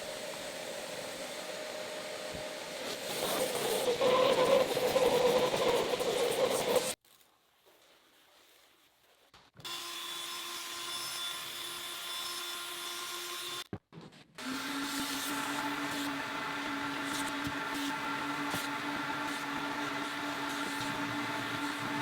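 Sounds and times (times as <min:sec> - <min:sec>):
small electric motor humming: 0:15.2 - 0:22.0.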